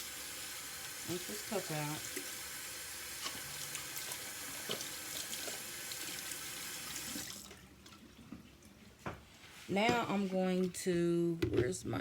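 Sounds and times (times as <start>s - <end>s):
kitchen tap running: 0.0s - 7.7s.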